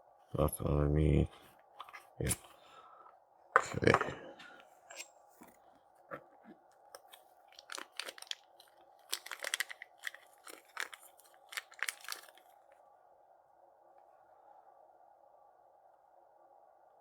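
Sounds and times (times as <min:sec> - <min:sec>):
faint hum: 0:00.0 - 0:17.0
packaging crinkling: 0:07.0 - 0:12.6.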